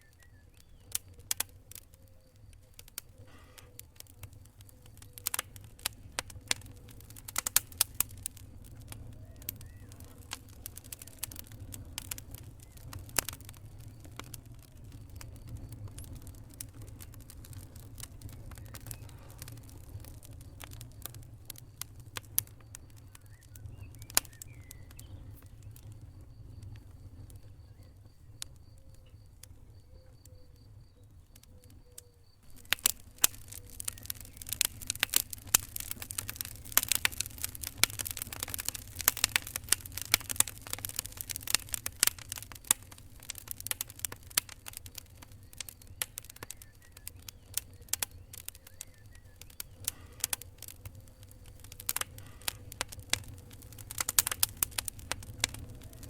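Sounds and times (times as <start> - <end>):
fire crackling with sharp pops: 0.0 - 56.0.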